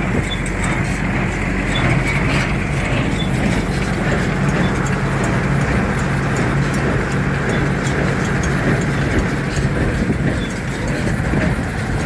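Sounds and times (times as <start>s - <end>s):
tractor engine hum: 0.0s - 12.0s
baler running: 0.2s - 12.0s.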